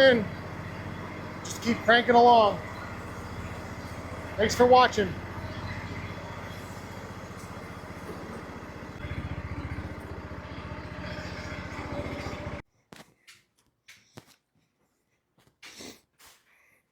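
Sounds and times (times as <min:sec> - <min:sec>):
small engine running: 0:00.0 - 0:12.6.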